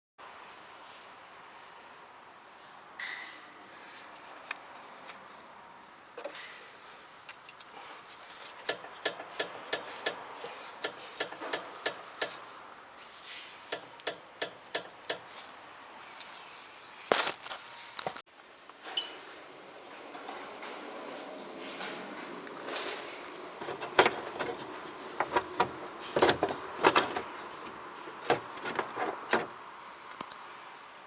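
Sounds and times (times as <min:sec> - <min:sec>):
car clicking and knocking: 0:08.6 - 0:12.4, 0:13.7 - 0:15.3, 0:23.6 - 0:29.6.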